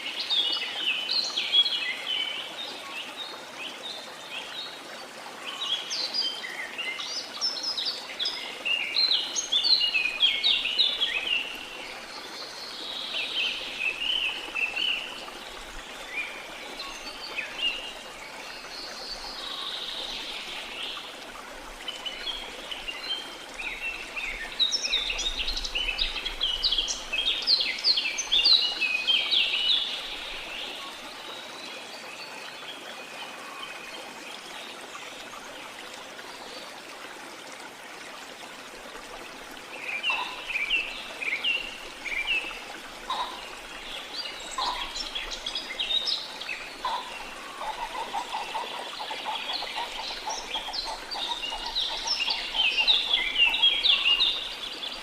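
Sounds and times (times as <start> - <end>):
falling water rushing: 0.0 - 55.0
birds chirping and singing: 44.2 - 46.0.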